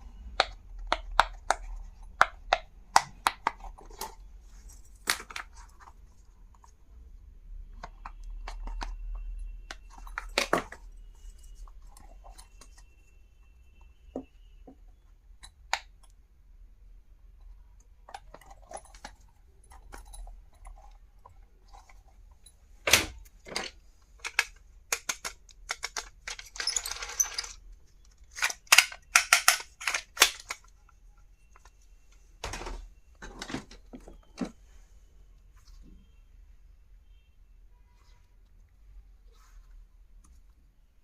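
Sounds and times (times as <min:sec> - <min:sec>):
hard items clicking and clacking: 0:07.7 - 0:13.0, 0:17.8 - 0:31.8.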